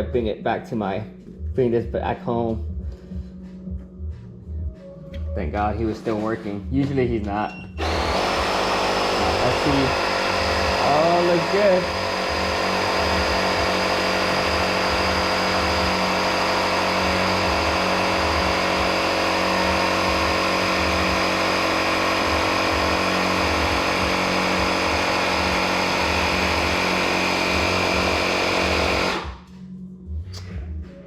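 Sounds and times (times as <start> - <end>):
electric air compressor running: 7.7 - 29.5.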